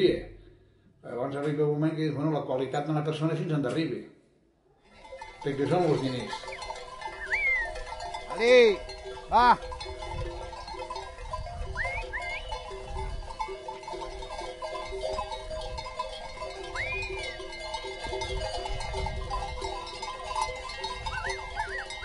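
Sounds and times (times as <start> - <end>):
sheep bells jangling: 4.8 - 22.0
short rising whistles: 7.2 - 7.7, 16.8 - 17.3.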